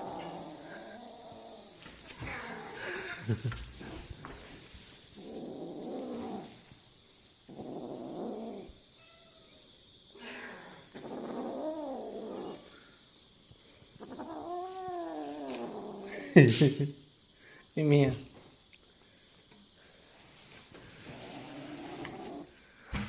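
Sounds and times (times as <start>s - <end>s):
cat meowing: 9.0s - 9.6s.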